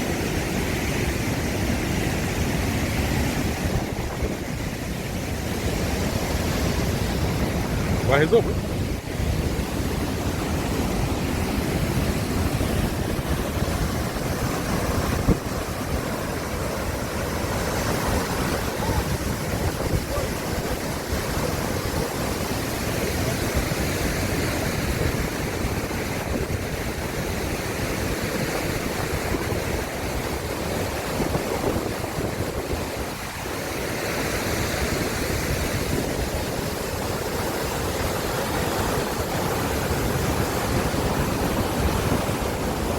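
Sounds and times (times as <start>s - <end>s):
river water flowing: 0.0s - 42.9s
wind buffeting microphone: 3.3s - 33.7s.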